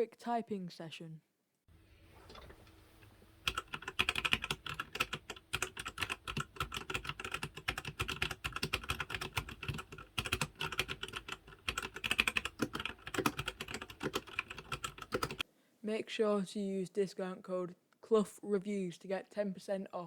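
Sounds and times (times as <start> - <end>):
mechanical keyboard typing: 3.4 - 15.4.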